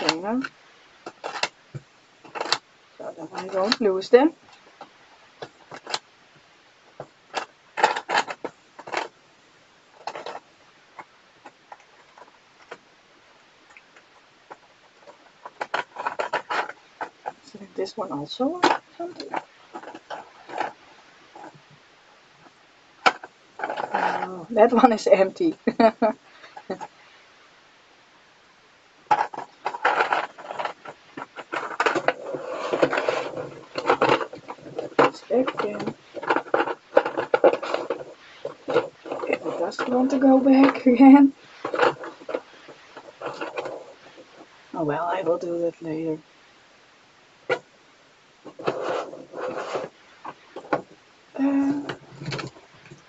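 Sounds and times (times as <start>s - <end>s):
plastic pieces clicking and rattling: 0.0s - 1.6s, 2.2s - 2.6s, 29.1s - 42.4s.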